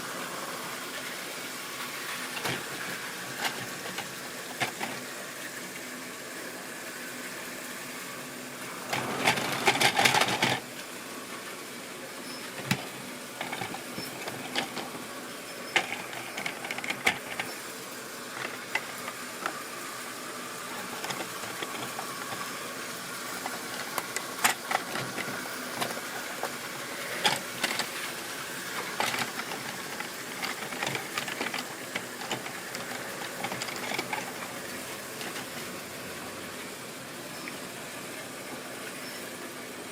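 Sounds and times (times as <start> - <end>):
model train wheels clicking: 8.8 - 10.6, 12.6 - 15.0, 15.7 - 35.7
small motor whirr: 12.2 - 36.0.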